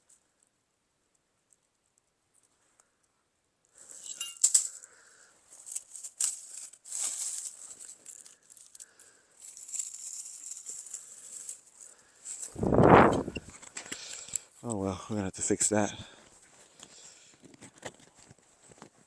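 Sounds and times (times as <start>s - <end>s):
brittle fence material rattling: 5.6s - 8.7s, 9.4s - 11.7s.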